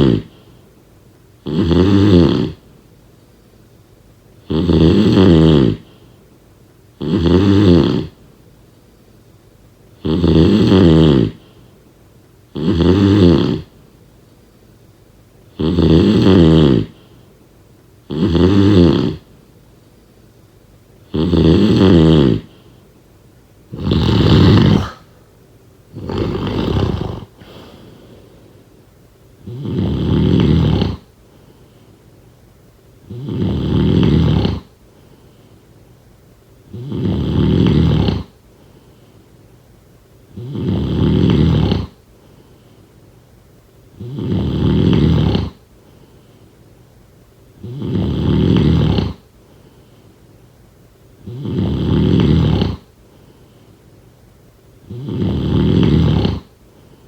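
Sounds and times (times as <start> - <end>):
loud snoring: 0.0 - 0.4, 1.4 - 2.6, 4.4 - 5.9, 7.0 - 8.2, 10.0 - 11.4, 12.5 - 13.7, 15.6 - 17.0, 18.1 - 19.3, 21.1 - 22.5, 23.7 - 25.2, 25.9 - 27.8, 29.4 - 31.1, 33.1 - 34.7, 36.7 - 38.3, 40.4 - 42.0, 44.0 - 45.6, 47.6 - 49.2, 51.2 - 52.9, 54.9 - 56.5.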